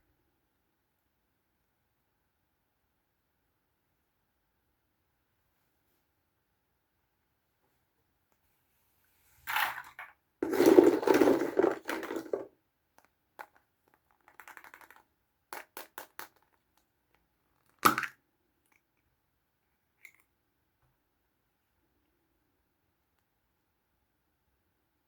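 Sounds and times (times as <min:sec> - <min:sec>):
packaging crinkling: 0:10.4 - 0:12.5
plastic toys clicking: 0:13.4 - 0:16.6.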